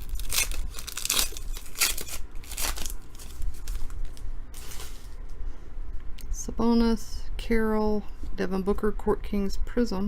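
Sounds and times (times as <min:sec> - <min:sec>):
cards and foil wrapper rustling: 0:00.0 - 0:05.2.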